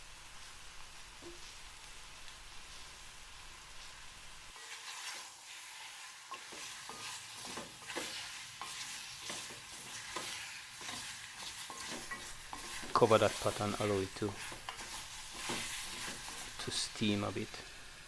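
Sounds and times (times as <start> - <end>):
chicken sizzling in a pot: 0.0 - 18.0
spoon scraping and knocking a pot: 6.3 - 13.0, 14.4 - 16.6.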